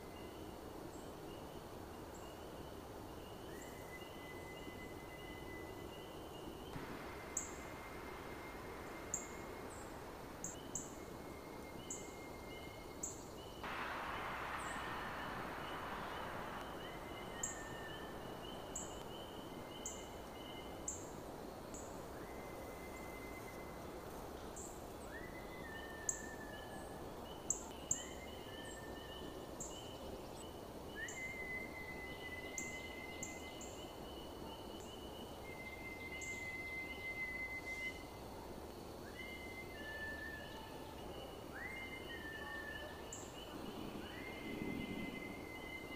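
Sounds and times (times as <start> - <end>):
rush of noise: 6.8 - 11.2, 13.6 - 20.4, 43.4 - 45.9
high sliding whistling tones: 13.7 - 19.6.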